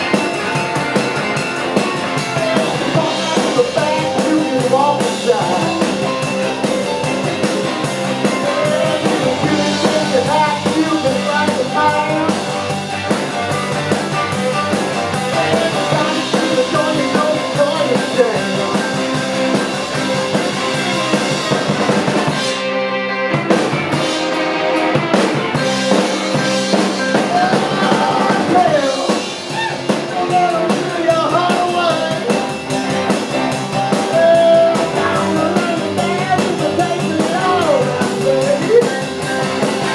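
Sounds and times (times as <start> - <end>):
live rock band playing: 0.0 - 39.9
person singing: 2.0 - 12.6, 14.3 - 19.2, 26.0 - 32.6, 33.9 - 39.2.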